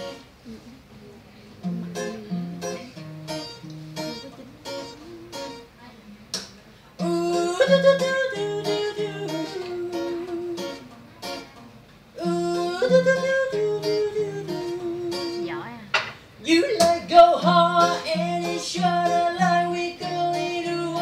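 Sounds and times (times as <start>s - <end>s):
acoustic guitar picking: 0.0s - 0.7s, 1.6s - 21.0s
held melody line: 7.0s - 10.9s, 12.2s - 15.7s, 16.5s - 21.0s.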